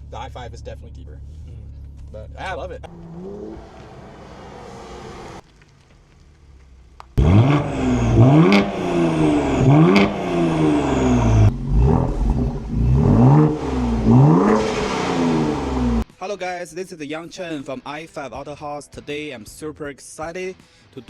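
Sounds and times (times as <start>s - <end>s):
car engine revving: 2.8s - 5.4s, 7.2s - 16.0s
exhaust pops: 5.3s - 16.0s.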